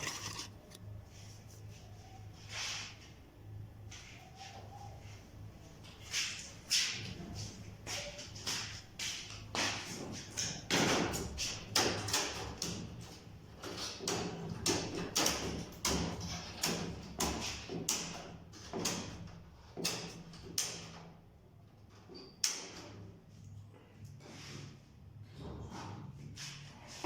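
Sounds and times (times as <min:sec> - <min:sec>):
short knocks and scrapes: 0:00.0 - 0:00.8.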